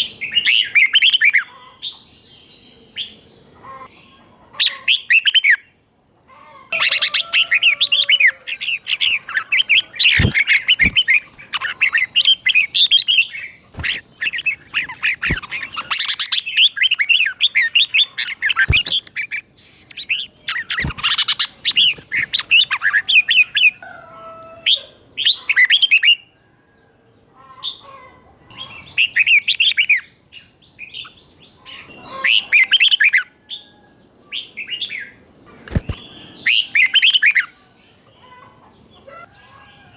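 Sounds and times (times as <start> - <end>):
bulbul singing chattering bouts: 6.8 - 23.8, 34.9 - 39.9.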